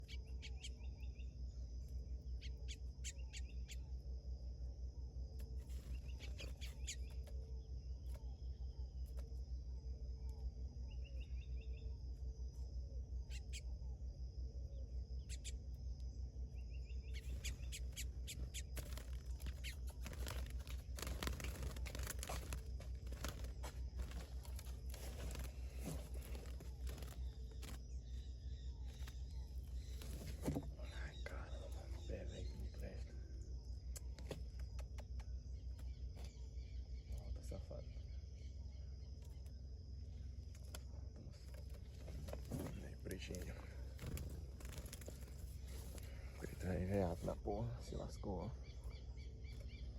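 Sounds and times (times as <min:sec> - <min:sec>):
finch chirping: 0:00.0 - 0:01.3, 0:02.4 - 0:03.9, 0:05.7 - 0:07.3, 0:13.2 - 0:13.7, 0:15.2 - 0:15.6, 0:16.5 - 0:33.0
steady low hum: 0:00.0 - 0:49.9
sharp clicks: 0:33.9 - 0:35.4.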